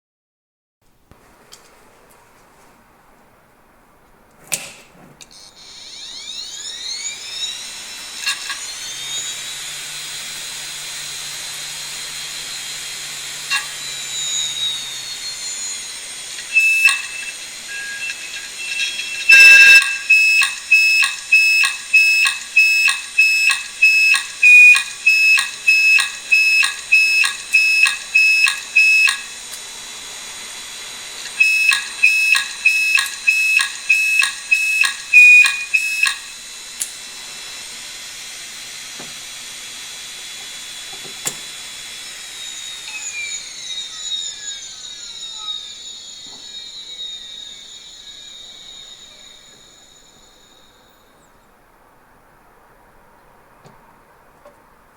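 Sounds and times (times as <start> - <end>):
sharp clicks: 4.5 - 29.7, 31.1 - 37.1, 40.2 - 50.2
hard disk drive whine: 5.2 - 53.6
siren-like beeping pulses: 5.6 - 29.5, 30.7 - 36.7, 41.5 - 51.2.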